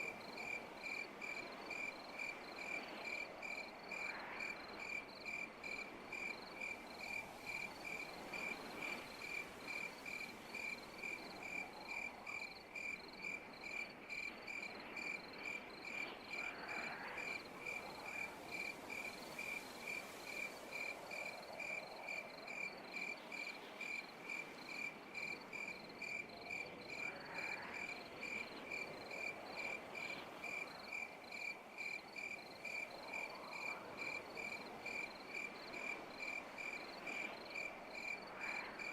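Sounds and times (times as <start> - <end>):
cricket chirping: 0.0 - 38.9.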